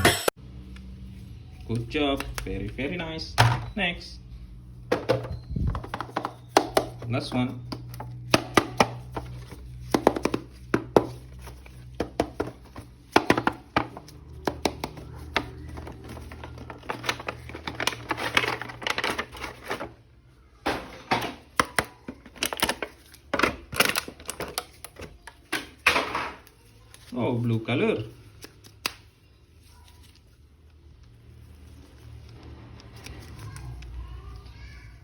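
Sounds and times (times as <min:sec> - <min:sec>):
packaging crinkle: 0:13.1 - 0:20.0.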